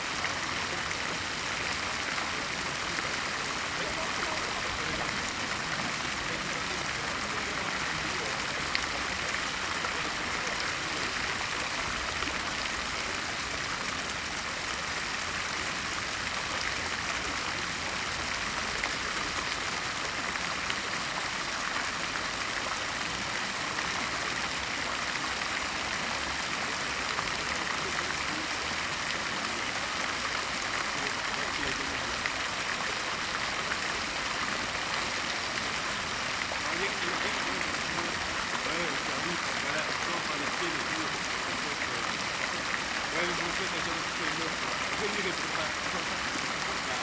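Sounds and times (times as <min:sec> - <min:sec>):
fountain water splashing: 0:00.0 - 0:47.0.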